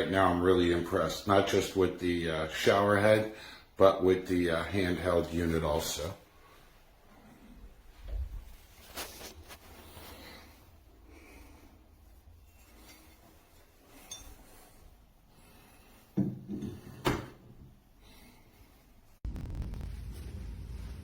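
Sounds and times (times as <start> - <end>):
steady low rumble: 19.2 - 21.0.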